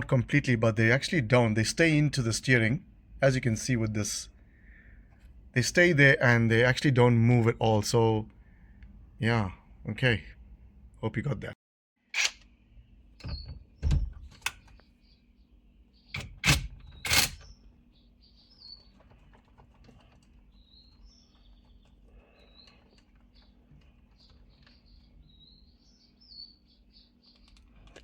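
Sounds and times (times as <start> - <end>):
faint bird chirps: 16.9 - 28.0.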